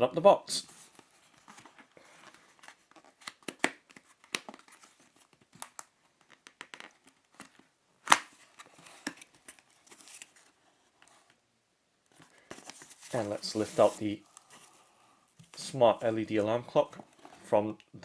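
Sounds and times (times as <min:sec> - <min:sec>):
cardboard box rustling and scraping: 0:12.6 - 0:14.7.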